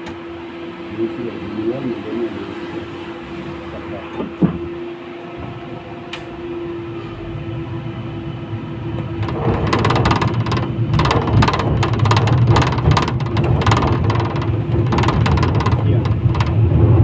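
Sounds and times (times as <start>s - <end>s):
tram interior hum: 0.0s - 17.0s
wheels rumbling on rails: 0.7s - 17.0s
knock: 9.2s - 16.6s.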